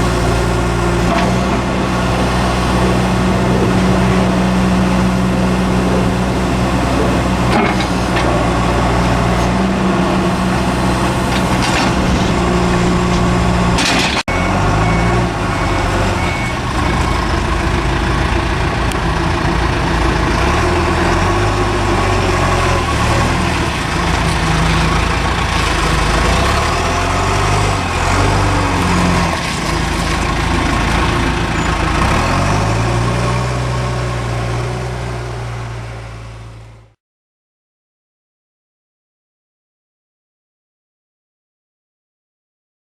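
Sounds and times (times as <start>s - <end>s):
diesel engine revving: 0.0s - 37.0s
high beeps: 14.3s - 17.2s.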